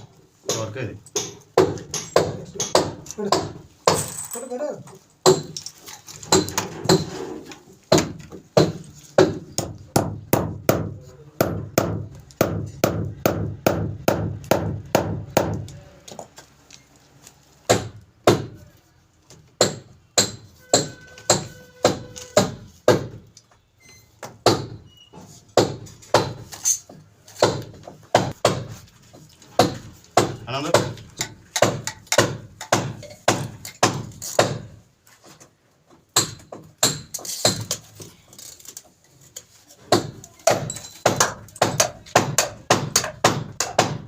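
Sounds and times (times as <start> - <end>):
hammer blows: 19.7 - 23.2.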